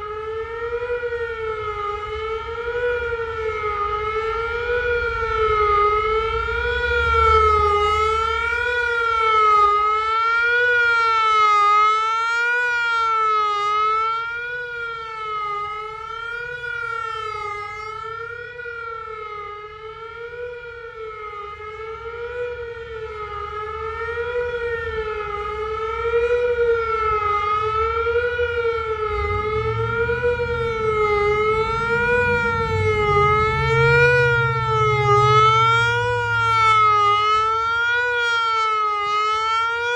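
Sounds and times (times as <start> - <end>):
wavering warning siren wail: 0.0 - 39.9.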